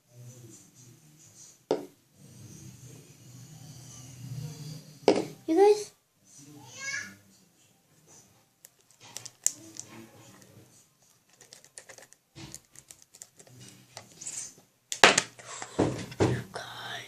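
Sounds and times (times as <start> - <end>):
handling clicks and taps: 11.1 - 14.1.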